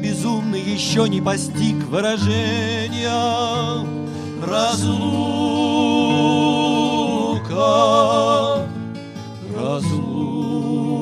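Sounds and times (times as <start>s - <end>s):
person singing with vibrato: 4.4s - 11.0s.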